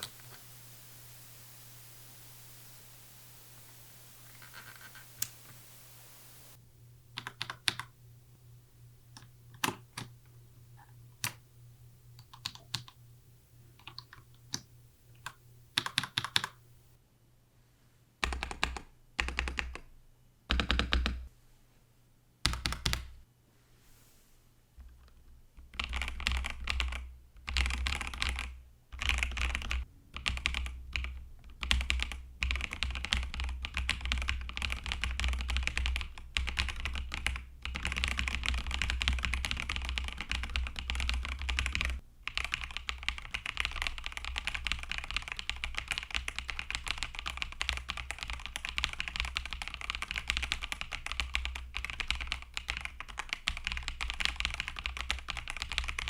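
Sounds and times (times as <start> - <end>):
fast mechanical keyboard typing: 7.2 - 7.9, 12.2 - 13.0, 13.8 - 14.6, 15.2 - 16.6, 18.2 - 19.8, 25.7 - 56.0.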